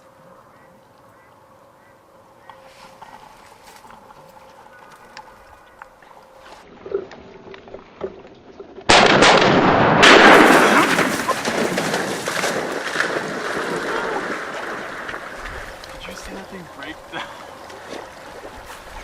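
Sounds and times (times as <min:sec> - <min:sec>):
shotgun shots: 0:08.9 - 0:13.8.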